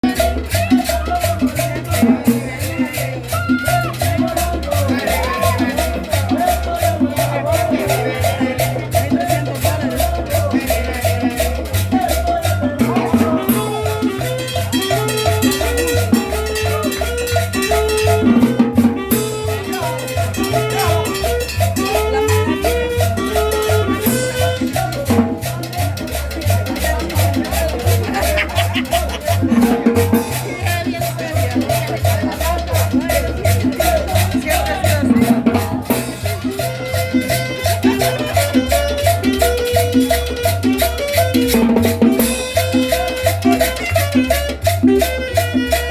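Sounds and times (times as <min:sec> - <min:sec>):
salsa dance music: 0:00.0 - 0:45.9.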